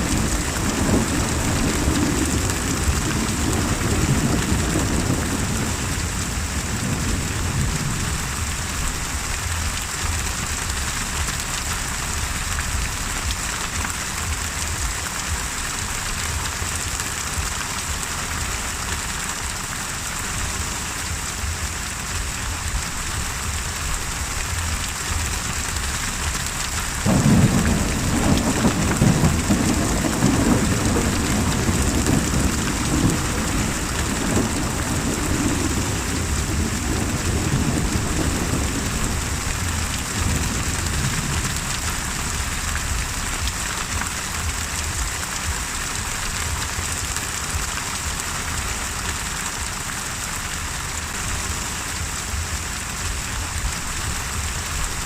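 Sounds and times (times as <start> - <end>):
thunder rumble: 0.0 - 16.5, 20.4 - 46.8
heavy rain: 0.0 - 55.0.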